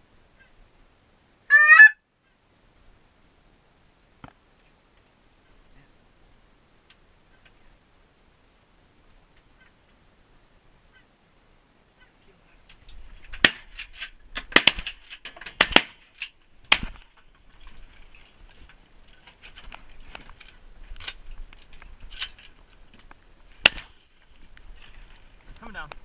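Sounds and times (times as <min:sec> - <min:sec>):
sharp cracks and knocks: 0:12.8 - 0:25.2.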